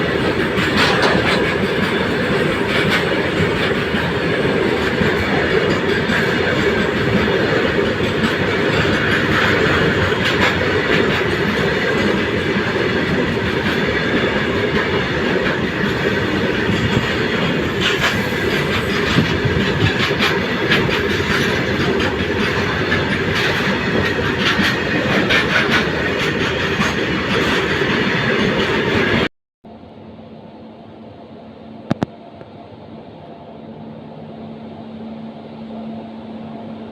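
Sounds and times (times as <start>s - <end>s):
train wheels clattering: 0.0s - 29.3s.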